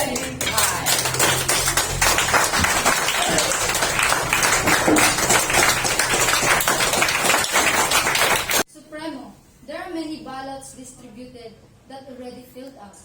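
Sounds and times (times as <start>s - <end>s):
faint voices: 0.0s - 7.2s
crowd applauding: 0.0s - 8.6s.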